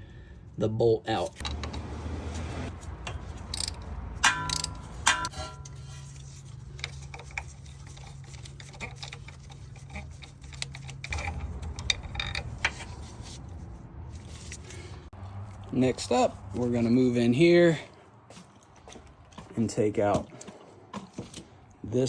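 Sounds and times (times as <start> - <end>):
hand ratchet clicking: 3.0 - 5.5, 6.8 - 12.5.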